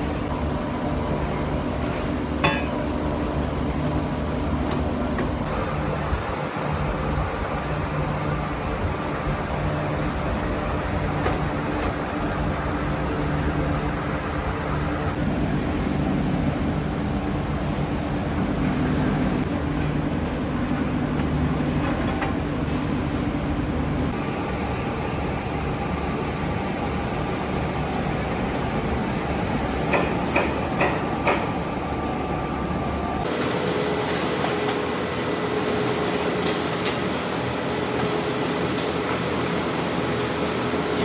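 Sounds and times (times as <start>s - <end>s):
factory machinery running: 0.0s - 41.0s
sharp metal clanks: 1.3s - 3.8s.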